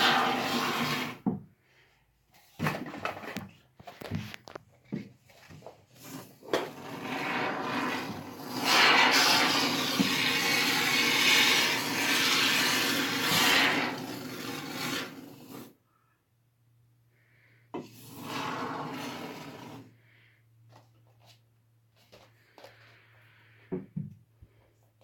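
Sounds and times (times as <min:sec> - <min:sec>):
expanding foam spraying hiss: 0:07.2 - 0:15.7.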